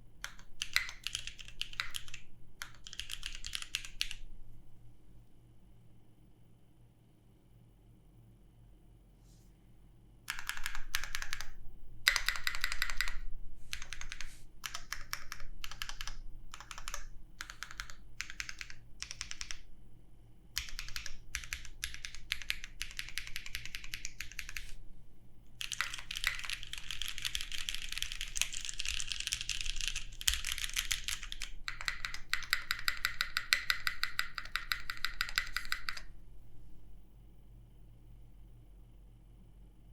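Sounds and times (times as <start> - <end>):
mechanical keyboard typing: 0.2 - 4.2, 10.3 - 19.7, 20.6 - 24.8, 25.6 - 36.1.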